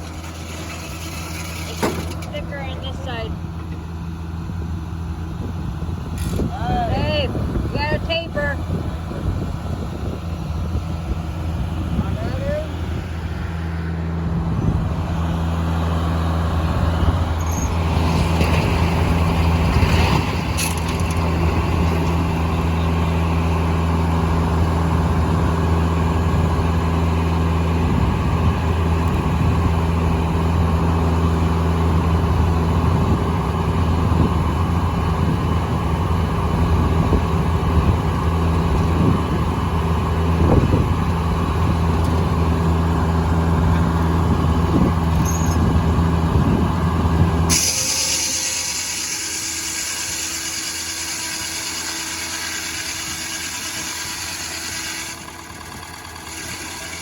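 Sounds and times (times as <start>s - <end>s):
knocks and clatters: 0.0s - 2.4s
sawmill engine droning: 0.0s - 57.0s.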